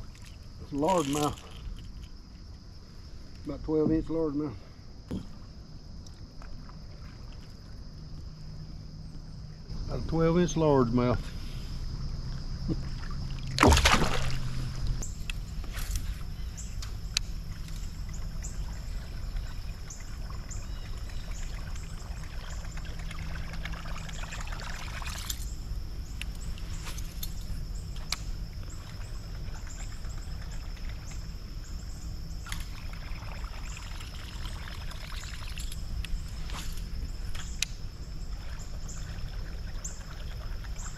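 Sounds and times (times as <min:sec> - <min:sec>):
creek water lapping: 0:05.2 - 0:08.6, 0:10.3 - 0:40.9
sharp water splash: 0:13.3 - 0:14.8.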